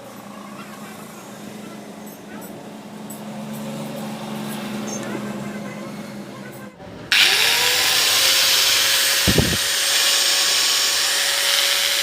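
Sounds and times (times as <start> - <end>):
electric grinder motor whine: 7.1 - 12.0.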